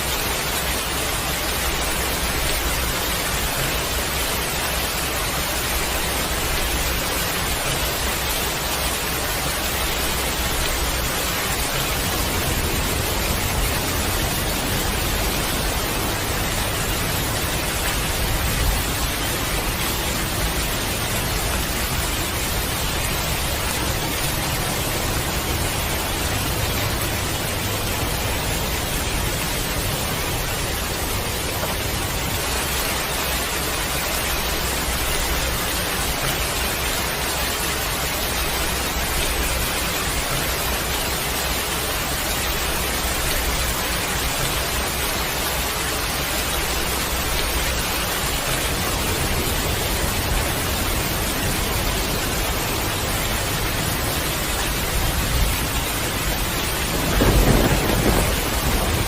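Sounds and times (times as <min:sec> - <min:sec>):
heavy rain falling: 0:00.0 - 0:59.0
low rumble of thunder: 0:55.0 - 0:59.0.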